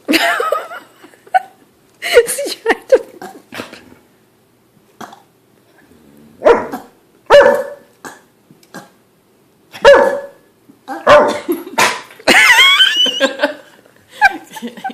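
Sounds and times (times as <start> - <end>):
dog barking: 6.4 - 7.9, 9.8 - 12.1.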